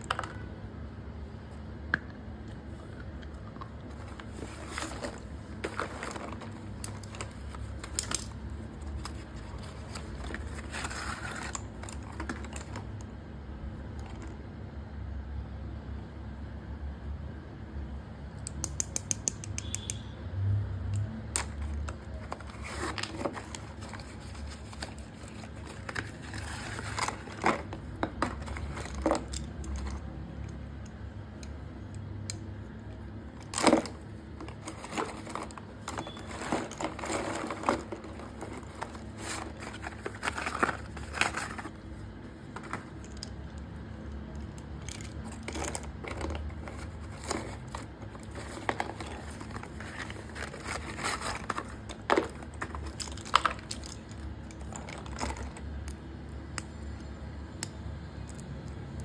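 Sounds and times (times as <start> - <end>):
plastic packaging crinkling and tearing: 22.0 - 30.1, 33.4 - 43.0, 45.0 - 55.6.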